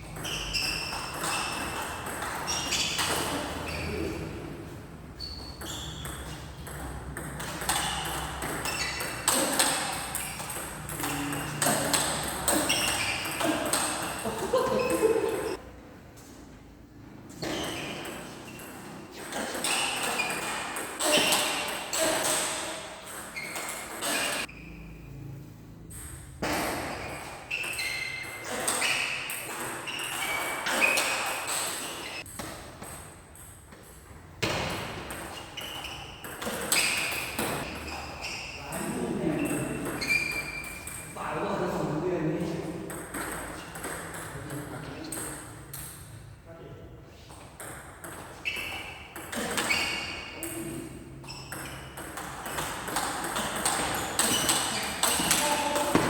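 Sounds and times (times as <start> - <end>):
shoe squeaks on court floor: 0.0 - 4.4, 5.1 - 15.6, 17.3 - 25.2, 26.0 - 33.0, 33.8 - 41.2, 47.2 - 56.0
racquet striking ball: 25.8 - 38.0, 51.1 - 56.0
sharp ball hits: 34.4 - 35.2, 51.5 - 56.0.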